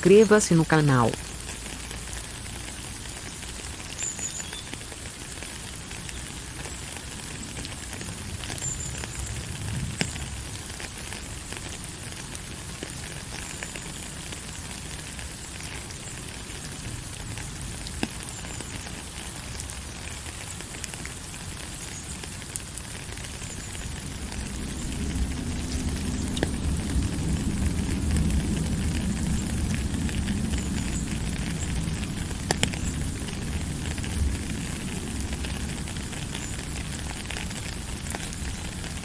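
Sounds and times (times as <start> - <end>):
raindrops ticking on a surface: 0.0 - 39.0
steady rain falling: 0.0 - 39.0.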